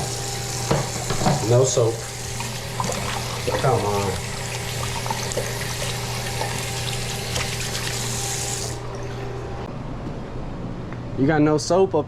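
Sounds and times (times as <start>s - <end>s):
sink tap running: 0.0s - 9.4s
hands rinsed under water: 2.0s - 9.0s.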